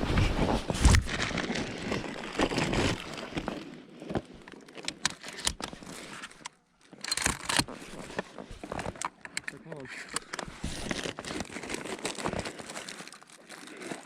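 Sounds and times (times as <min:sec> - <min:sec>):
rustling and crunching through field: 0:00.0 - 0:14.0
sharp clicks: 0:06.3 - 0:07.7.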